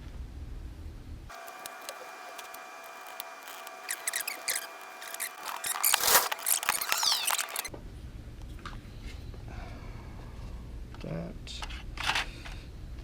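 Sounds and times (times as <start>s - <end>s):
plastic parts clicking and scraping: 1.3s - 7.7s
faint steady whine: 1.3s - 10.9s
short falling squeaks: 3.0s - 7.7s.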